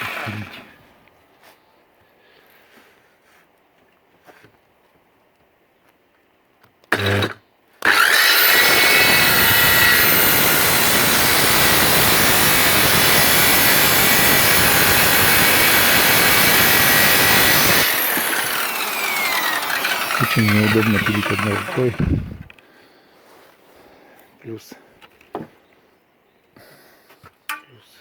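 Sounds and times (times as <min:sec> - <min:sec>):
circular saw cutting wood: 0:00.0 - 0:00.7, 0:06.9 - 0:22.5.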